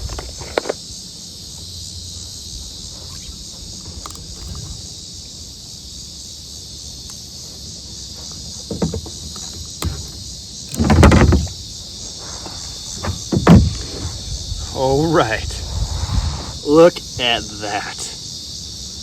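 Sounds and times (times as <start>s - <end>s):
insects chirring: 0.0s - 19.0s
small sharp clicks: 3.8s - 5.0s, 9.3s - 12.1s.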